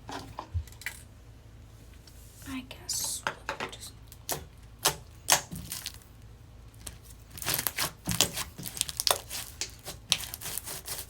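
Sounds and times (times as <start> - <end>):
slime squished by hand: 4.1 - 11.0
slime crackling pops: 7.4 - 10.7.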